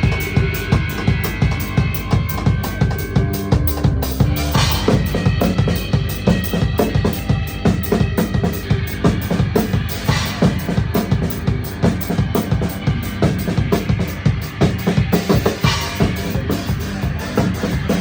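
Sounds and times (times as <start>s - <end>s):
cymbal crashes: 0.0s - 18.0s
live band playing: 0.0s - 18.0s.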